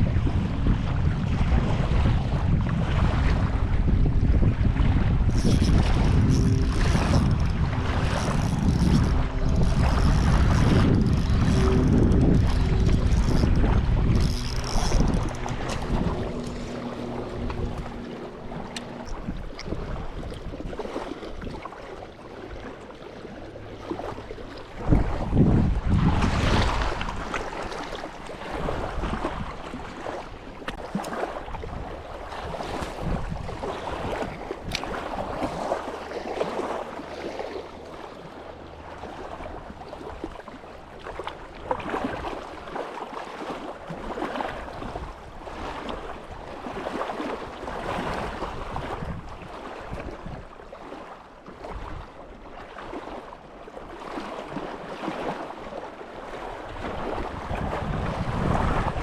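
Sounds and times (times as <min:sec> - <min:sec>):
wind gusting over microphone: 0:00.0 - 0:21.1, 0:24.7 - 0:30.2, 0:31.2 - 0:38.3, 0:47.6 - 0:50.4, 0:56.8 - 0:59.0
water lapping: 0:00.0 - 0:59.0.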